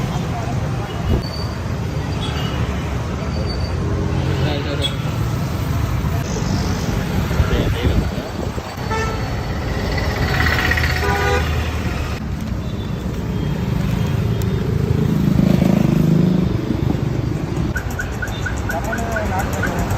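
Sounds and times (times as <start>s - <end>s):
vehicle engines running: 5.2s - 19.9s
car horn honking: 8.8s - 9.2s.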